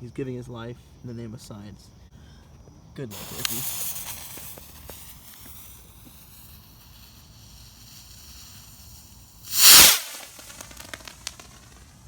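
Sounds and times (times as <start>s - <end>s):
firework bursting: 3.1s - 12.0s
firework fuse hissing: 3.1s - 12.0s
small crackles: 9.5s - 12.0s.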